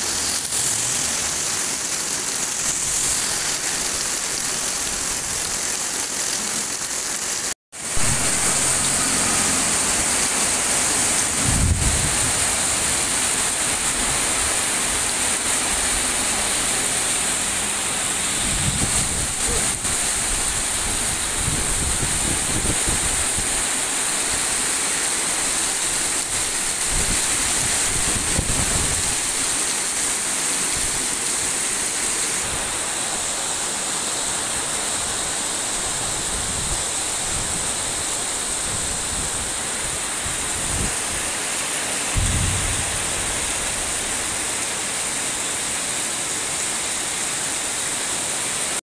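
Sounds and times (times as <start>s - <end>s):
heavy rain pouring: 0.0s - 48.8s
strong wind: 7.9s - 13.1s, 18.0s - 23.6s, 26.2s - 29.4s, 35.8s - 41.4s, 42.1s - 44.6s
low thunder rumbles: 42.1s - 44.2s.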